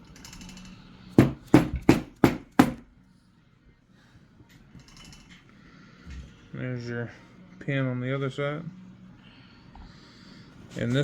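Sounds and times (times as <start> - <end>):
hammer tapping metal punch: 1.2 - 2.8.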